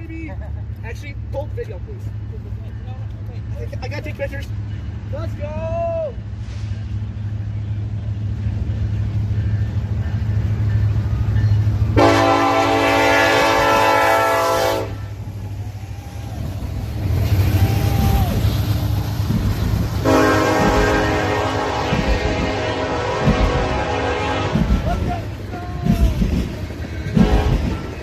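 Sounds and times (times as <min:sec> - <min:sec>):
diesel locomotive rumble: 0:00.0 - 0:28.0
locomotive horn blasts: 0:12.0 - 0:15.2, 0:20.0 - 0:24.8, 0:27.2 - 0:27.9.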